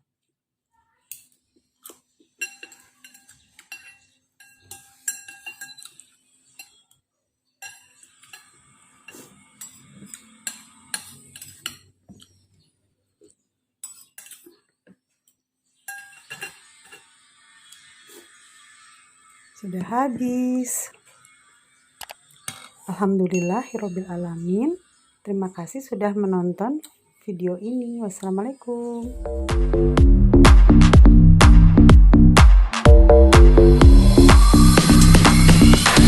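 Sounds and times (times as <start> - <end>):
cutlery clinking against bowl: 1.1 - 6.8, 7.6 - 12.4, 13.8 - 14.6, 15.9 - 17.1.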